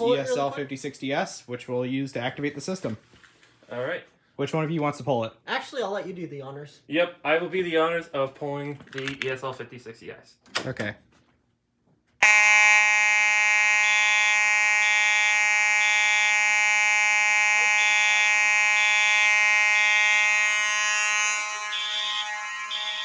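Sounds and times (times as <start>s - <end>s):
fire alarm buzzing horn: 12.2s - 23.0s
pulsing high alarm tone: 12.2s - 23.0s.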